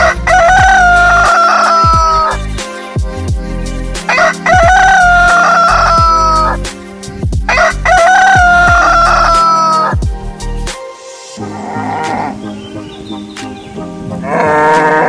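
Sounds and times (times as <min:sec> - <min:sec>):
rooster crowing: 0:00.0 - 0:02.4, 0:04.1 - 0:06.6, 0:07.5 - 0:10.0
music with thumping beat: 0:00.0 - 0:10.9.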